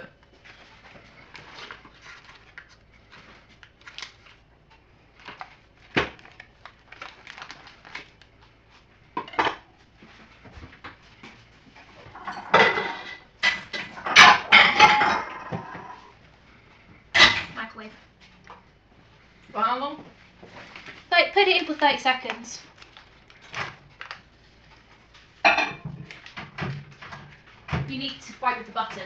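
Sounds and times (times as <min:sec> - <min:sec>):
utensils and dishes clinking: 0:12.0 - 0:16.1, 0:25.5 - 0:26.0.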